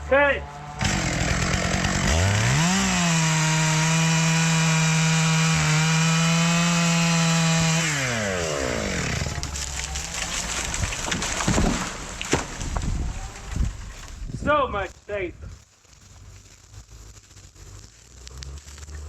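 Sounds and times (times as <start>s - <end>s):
chainsaw cutting wood: 0.5s - 14.2s, 16.8s - 19.0s.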